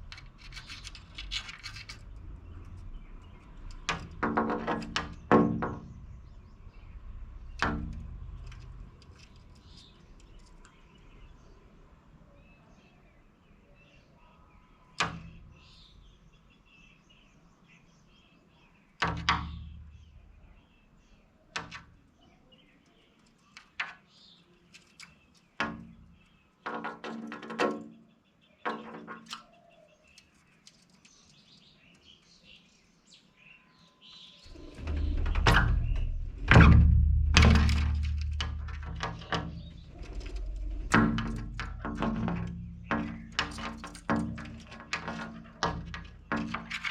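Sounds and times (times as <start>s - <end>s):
sharp knocks: 3.7s - 6.2s, 7.5s - 8.7s, 34.5s - 46.9s.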